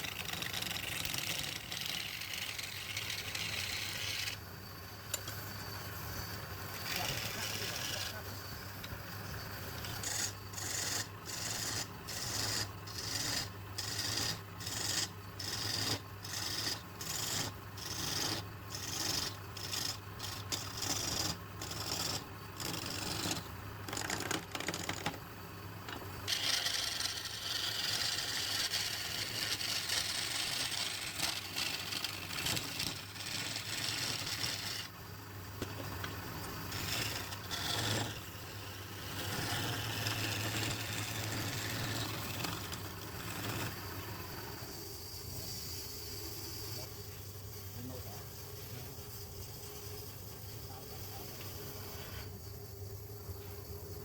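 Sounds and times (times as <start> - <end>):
lathe motor hum: 0.0 - 23.8, 25.8 - 45.2
abrasive rubbing on turning wood: 6.7 - 8.8, 26.3 - 35.0, 36.7 - 46.9.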